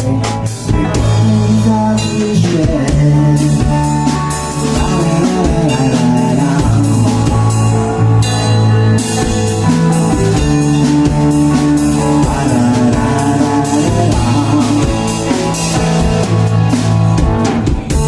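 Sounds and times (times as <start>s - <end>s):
rock band playing: 0.0s - 18.0s.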